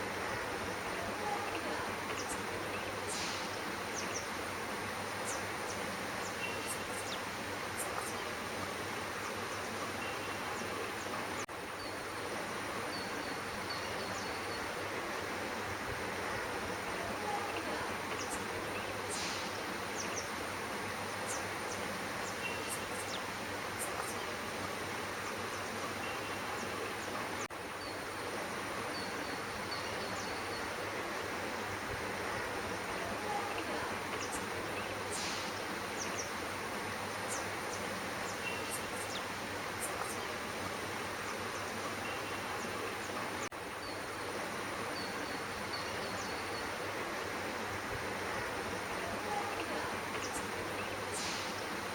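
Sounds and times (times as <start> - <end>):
outdoor background hiss: 0.0 - 51.9.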